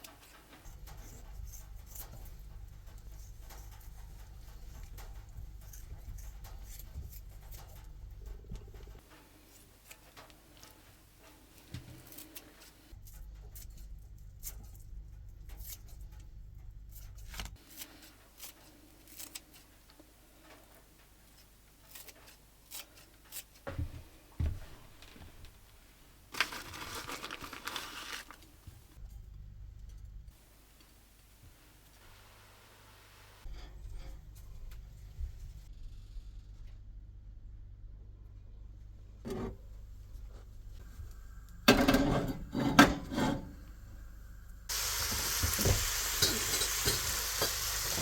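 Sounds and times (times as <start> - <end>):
rustling tearing sound: 26.3 - 28.9.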